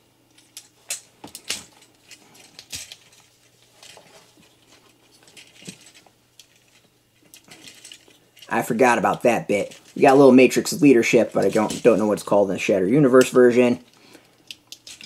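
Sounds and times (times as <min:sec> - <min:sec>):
plastic toy parts clicking: 0:11.2 - 0:12.0, 0:14.4 - 0:15.0.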